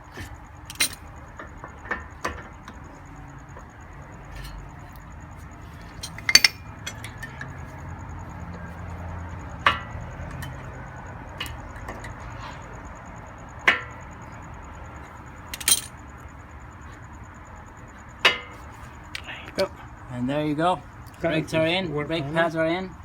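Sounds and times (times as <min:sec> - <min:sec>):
metallic clinks and knocks: 0:00.6 - 0:02.8, 0:05.8 - 0:07.8, 0:15.4 - 0:16.0.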